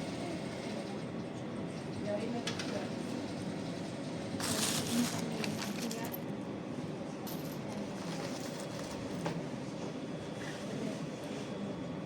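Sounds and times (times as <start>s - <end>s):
steady background noise: 0.0s - 12.0s.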